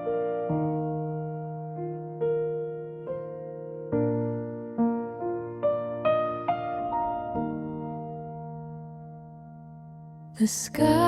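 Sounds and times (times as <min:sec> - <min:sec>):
soft piano chord: 0:00.0 - 0:11.0.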